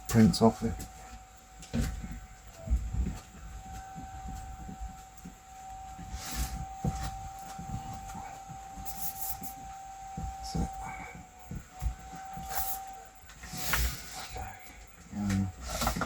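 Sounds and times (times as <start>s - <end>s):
steady thin whine: 0.0s - 16.0s
short hiss: 13.5s - 14.2s.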